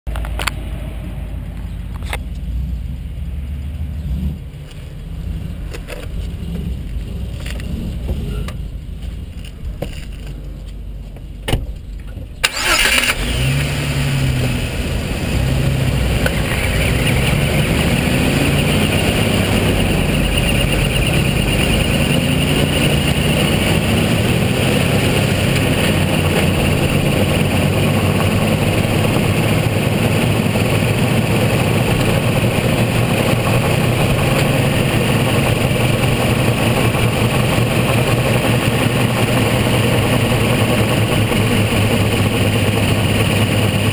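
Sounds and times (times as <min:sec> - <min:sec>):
car engine accelerating: 0:00.1 - 0:09.5, 0:12.4 - 0:43.9
tyres and drivetrain rumble: 0:00.1 - 0:43.9
drivetrain chirps: 0:15.6 - 0:43.8.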